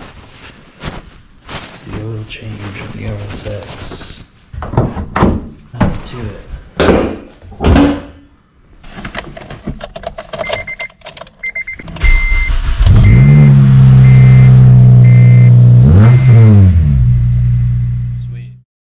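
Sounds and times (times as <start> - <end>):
car chime beeping: 11.4 - 15.5
car engine cranking and starting: 11.8 - 18.0.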